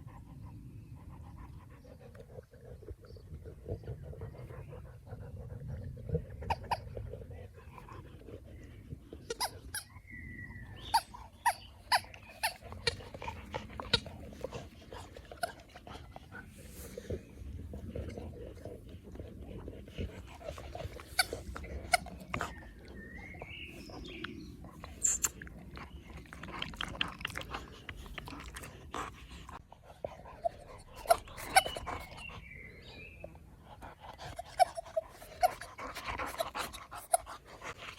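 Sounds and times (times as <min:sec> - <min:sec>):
dog panting: 0:00.0 - 0:37.9
dog squeaks: 0:09.3 - 0:09.9, 0:10.8 - 0:13.0, 0:25.0 - 0:25.4, 0:31.0 - 0:32.0, 0:34.4 - 0:35.6.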